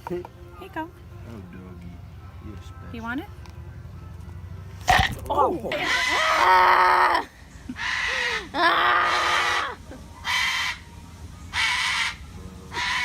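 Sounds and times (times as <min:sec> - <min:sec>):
animal giving harsh calls: 0:04.9 - 0:10.8, 0:11.5 - 0:13.0.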